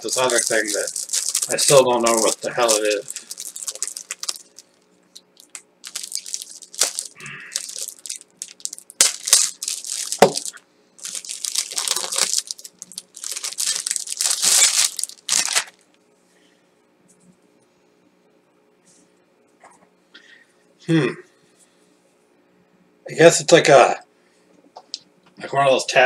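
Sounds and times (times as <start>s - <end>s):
packaging tearing and crinkling: 0.0s - 15.8s.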